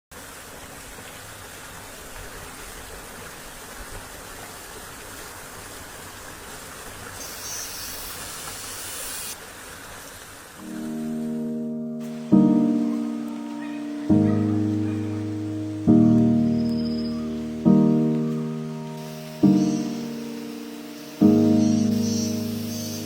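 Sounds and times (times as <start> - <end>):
stream rushing: 0.1 - 23.0
higher bright hiss: 7.2 - 9.5, 10.6 - 23.0.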